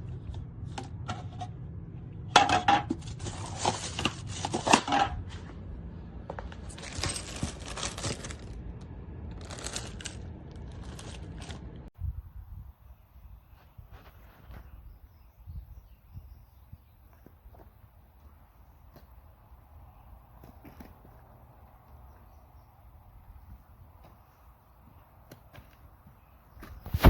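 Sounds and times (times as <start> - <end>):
low steady hum: 0.0 - 13.9.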